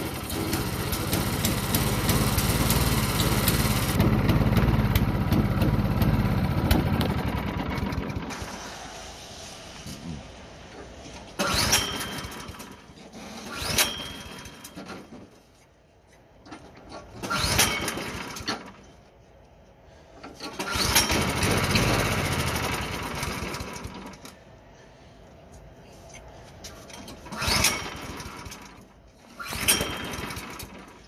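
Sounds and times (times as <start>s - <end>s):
engine cranking with rising whir: 0.0s - 14.0s, 20.4s - 24.4s.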